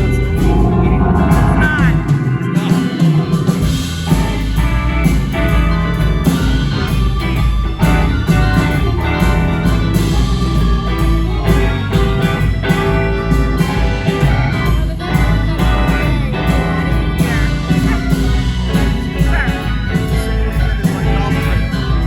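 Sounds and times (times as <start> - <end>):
drum beat: 0.0 - 22.0
electric guitar: 0.0 - 22.0
organ: 0.0 - 22.0.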